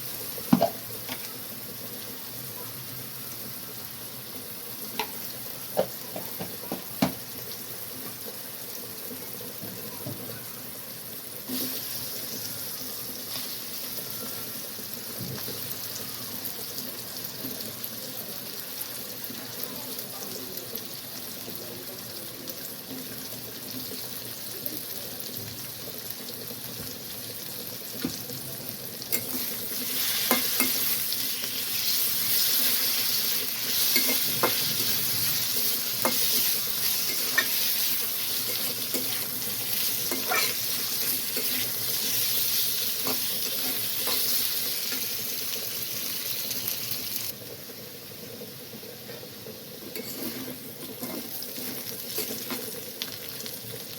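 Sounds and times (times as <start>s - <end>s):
food sizzling in oil: 0.0s - 53.9s
metal spatula scraping pan: 33.7s - 42.2s, 49.9s - 52.7s.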